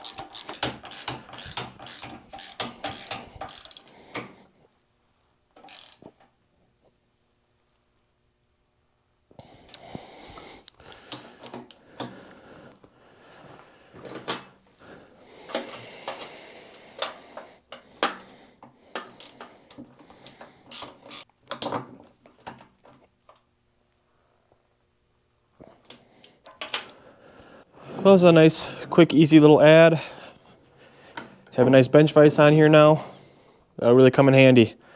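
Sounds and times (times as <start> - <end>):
hand tools on metal: 0.0 - 4.4, 31.1 - 31.7.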